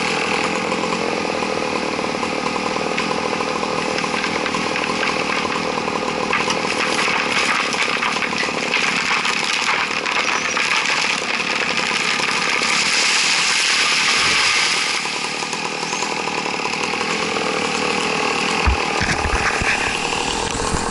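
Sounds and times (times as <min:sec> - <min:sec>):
chainsaw engine running: 0:00.0 - 0:20.9.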